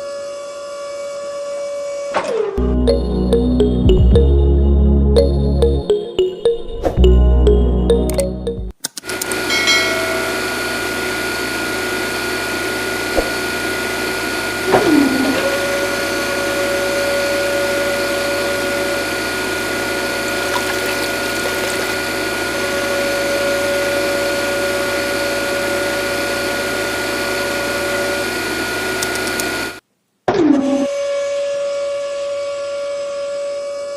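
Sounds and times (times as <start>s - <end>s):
steady tone: 2.6s - 8.7s.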